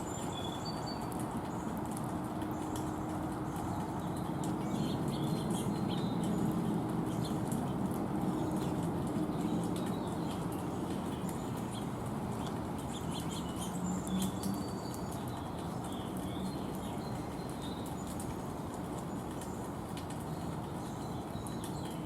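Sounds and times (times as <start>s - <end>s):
small birds chirping: 0.0s - 22.0s.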